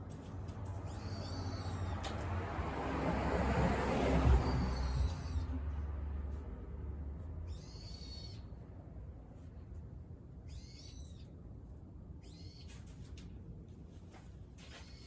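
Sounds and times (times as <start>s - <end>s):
bird calling high-pitched: 7.5s - 8.4s, 10.5s - 11.2s.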